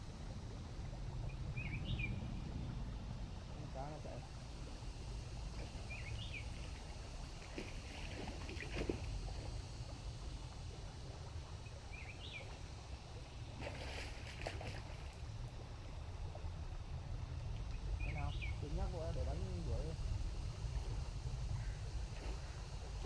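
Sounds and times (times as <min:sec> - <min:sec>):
steady low rumble: 0:00.0 - 0:07.6, 0:15.1 - 0:23.0
water sloshing and splashing: 0:00.1 - 0:16.8, 0:18.8 - 0:23.0.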